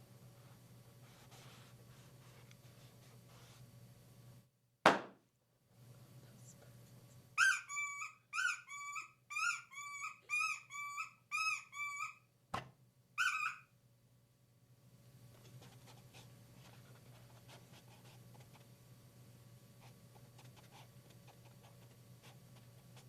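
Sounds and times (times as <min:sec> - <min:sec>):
pitched squeaks: 0:07.4 - 0:12.2, 0:13.2 - 0:13.6.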